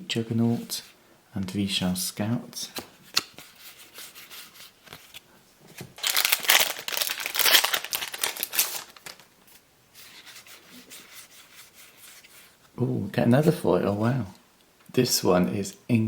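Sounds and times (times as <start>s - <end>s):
plastic wrapper tearing and crinkling: 6.0s - 9.3s.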